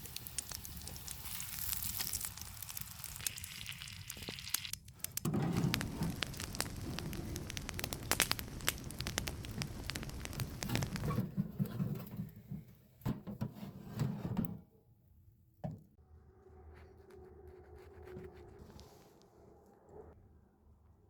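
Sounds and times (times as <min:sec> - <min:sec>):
campfire crackling and popping: 0:00.0 - 0:11.2.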